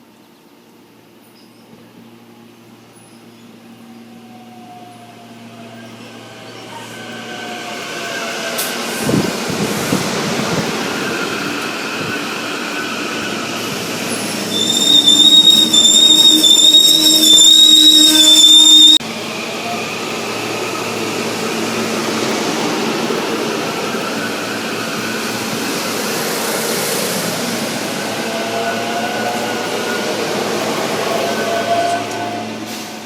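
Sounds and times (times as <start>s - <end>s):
train rumbling on rails: 1.6s - 33.0s
high wavering wheel squeal: 10.4s - 19.0s, 27.2s - 32.6s.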